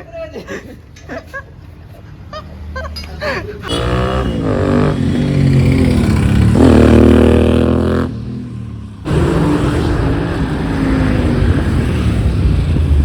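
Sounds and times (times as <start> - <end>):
motorcycle engine revving: 3.7 - 13.0.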